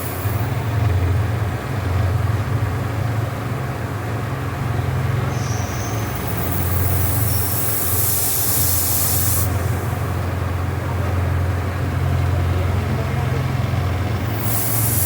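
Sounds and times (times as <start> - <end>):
loud spray hiss: 5.3 - 10.2, 14.4 - 15.0.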